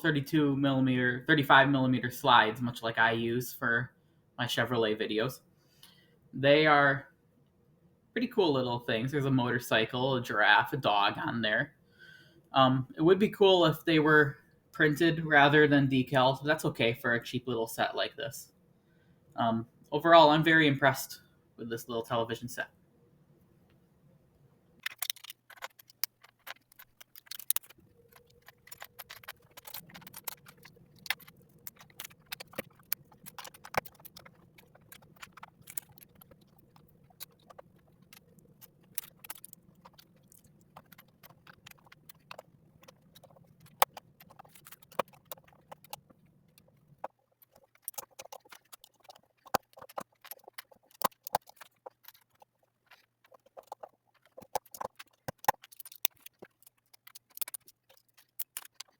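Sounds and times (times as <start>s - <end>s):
faint steady hum: 0.0s - 58.9s
plastic bricks clicking and rattling: 24.8s - 58.9s.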